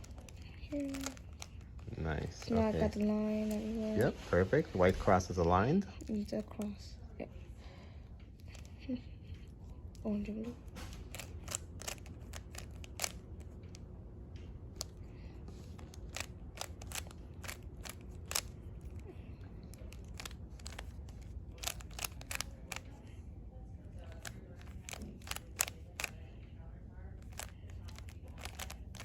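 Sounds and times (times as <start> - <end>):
low room hum: 0.0 - 29.0
plastic cube clicks: 11.0 - 13.7, 15.6 - 19.0, 19.7 - 22.9, 24.1 - 26.1, 27.2 - 29.0.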